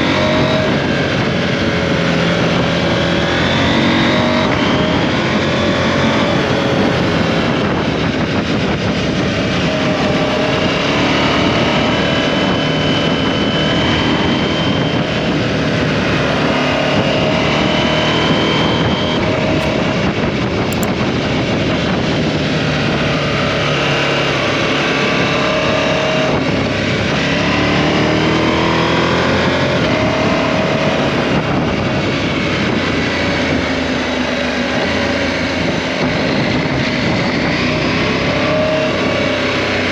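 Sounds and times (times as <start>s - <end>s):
wind and road noise: 0.0s - 39.9s.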